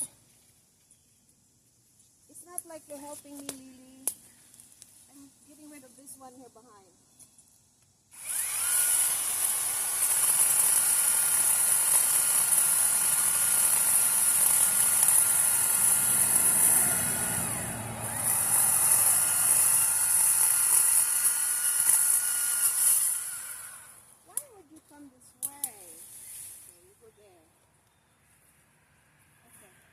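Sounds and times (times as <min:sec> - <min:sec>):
chainsaw cutting tree: 0:08.1 - 0:24.2.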